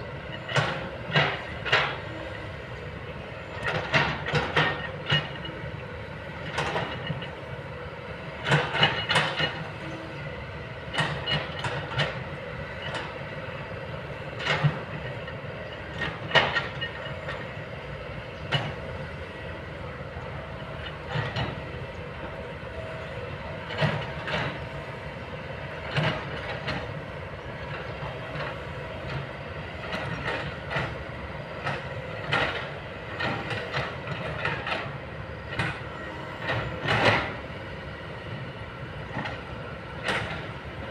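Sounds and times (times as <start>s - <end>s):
excavator diesel engine running: 0.0s - 40.9s
metallic clanks and knocks: 0.3s - 2.2s, 3.4s - 5.6s, 6.4s - 7.4s, 8.4s - 9.8s, 14.4s - 17.4s.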